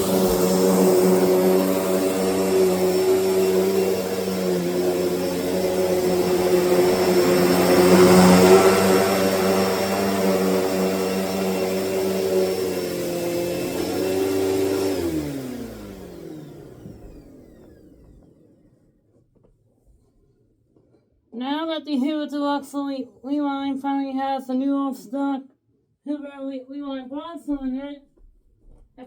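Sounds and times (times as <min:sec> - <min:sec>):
vacuum cleaner motor whine: 0:00.0 - 0:18.8
vacuum motor winding down: 0:00.0 - 0:18.8.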